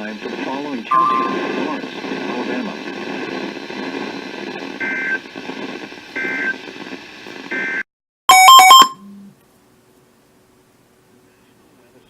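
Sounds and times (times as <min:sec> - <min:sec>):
radio receiver hiss: 0:00.0 - 0:07.6
loud electronic beeping burst: 0:00.9 - 0:01.8.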